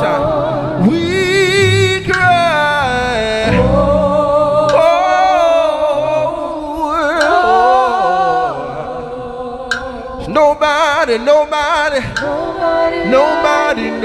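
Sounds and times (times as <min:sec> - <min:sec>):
gospel worship singing: 0:00.0 - 0:14.0
low instrumental accompaniment: 0:01.2 - 0:05.3.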